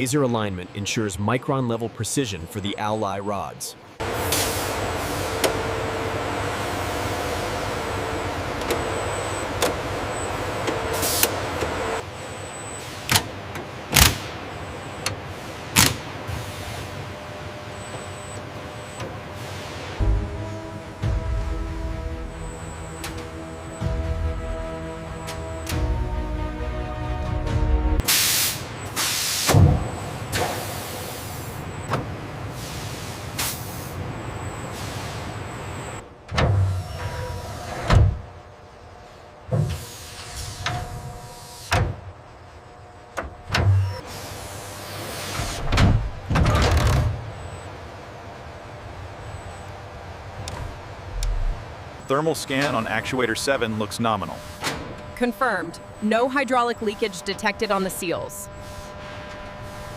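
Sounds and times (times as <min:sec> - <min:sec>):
machinery hum: 0:00.0 - 0:59.9
machinery hissing air bursts: 0:04.0 - 0:08.4, 0:10.8 - 0:11.6, 0:15.3 - 0:17.0, 0:28.0 - 0:31.7, 0:32.4 - 0:34.0, 0:34.6 - 0:35.5, 0:39.6 - 0:41.8, 0:44.0 - 0:45.7, 0:54.3 - 0:55.0, 0:58.5 - 0:59.9
music: 0:20.0 - 0:28.0
air hiss: 0:28.1 - 0:29.6.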